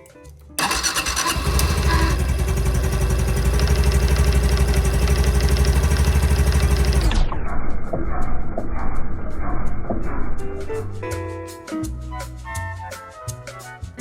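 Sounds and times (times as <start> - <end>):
motorcycle engine starting and idling: 0.6 - 7.4.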